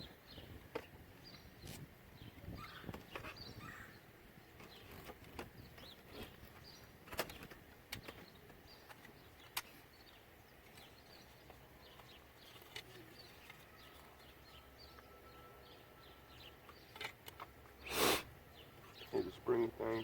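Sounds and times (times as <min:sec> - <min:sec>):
faint bird chirps: 0:01.2 - 0:04.0.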